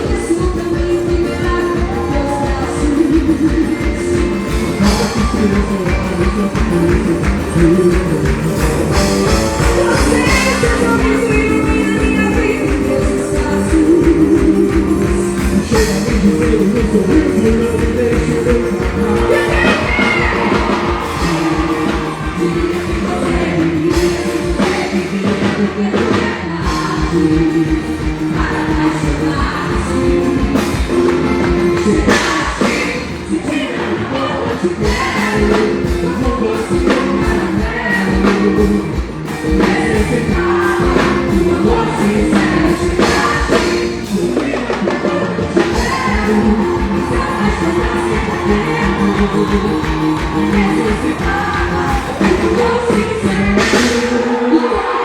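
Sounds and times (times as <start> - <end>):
festival music with singing: 0.0 - 55.0.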